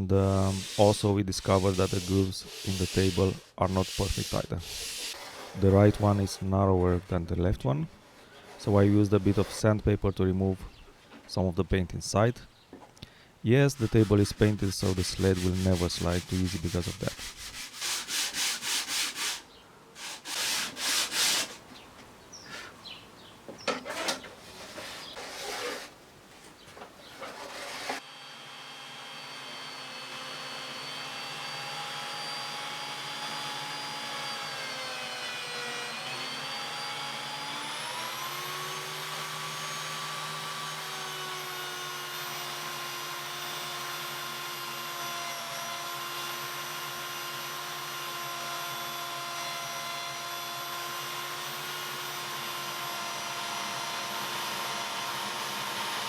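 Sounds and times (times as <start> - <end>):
sandpaper rubbing wood: 0.3 - 6.4, 8.6 - 9.7, 13.7 - 19.4, 20.0 - 21.6, 23.9 - 26.0, 27.2 - 28.0
power tool motor running: 0.5 - 5.3, 27.2 - 56.0.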